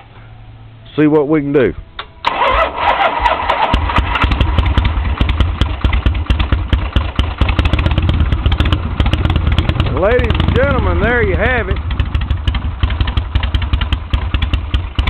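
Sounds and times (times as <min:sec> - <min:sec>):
motorcycle starter cranking: 0:02.0 - 0:10.8
motorcycle engine running: 0:02.3 - 0:15.0.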